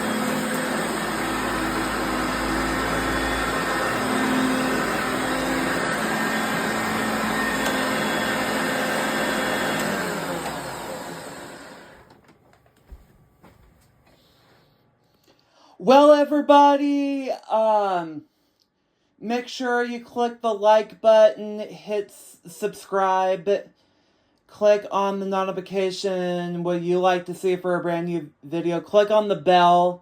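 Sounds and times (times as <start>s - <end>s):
vacuum cleaner running: 0.0s - 13.6s.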